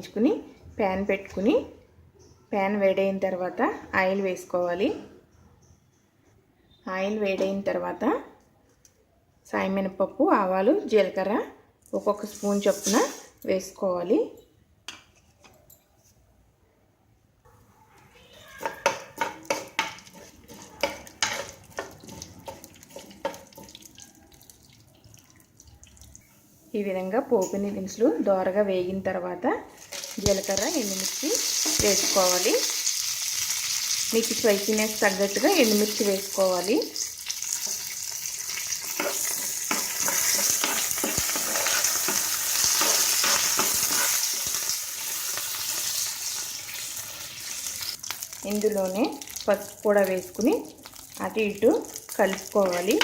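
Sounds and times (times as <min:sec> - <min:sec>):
seeds frying in hot oil: 0:18.6 - 0:26.3, 0:29.7 - 0:53.0.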